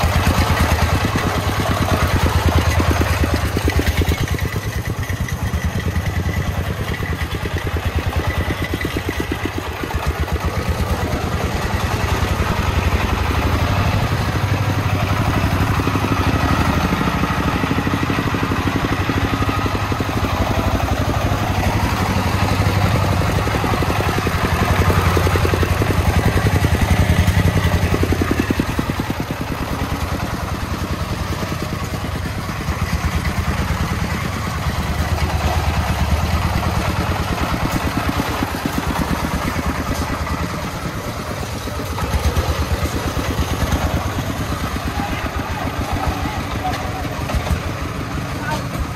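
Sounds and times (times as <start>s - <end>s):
small diesel engine chugging: 0.0s - 48.9s.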